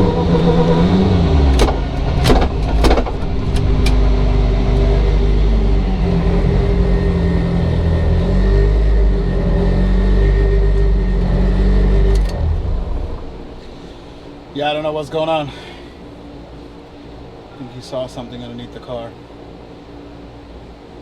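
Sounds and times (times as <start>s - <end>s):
car engine on a dyno: 0.0s - 15.4s.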